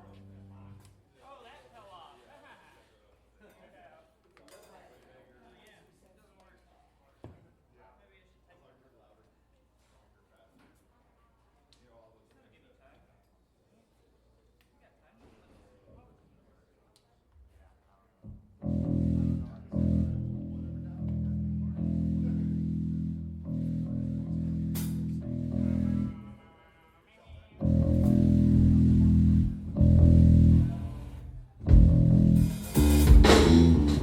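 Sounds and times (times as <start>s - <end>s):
electric guitar and bass chords: 0.0s - 0.8s, 18.4s - 26.3s, 27.6s - 34.0s
punk rock band playing: 18.6s - 26.2s, 27.6s - 34.0s
drums crashing: 29.7s - 34.0s.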